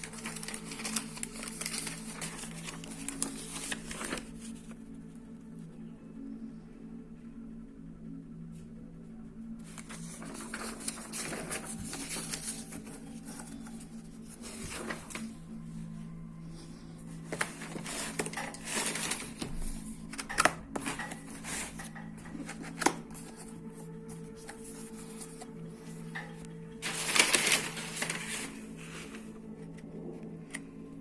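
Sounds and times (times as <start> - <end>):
packaging rustling and crinkling: 0.0 - 4.8, 9.6 - 15.5, 17.1 - 25.8, 26.8 - 29.6
steady low hum: 0.0 - 31.0.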